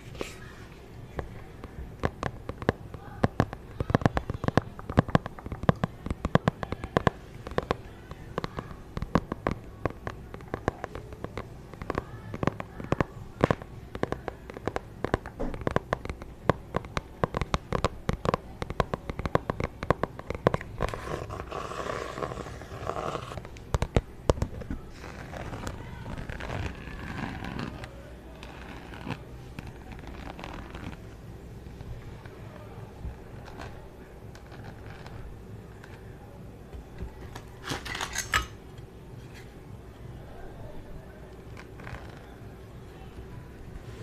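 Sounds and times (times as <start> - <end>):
scratchy texture: 0.0 - 44.0
sharp taps and clicks: 1.2 - 25.6.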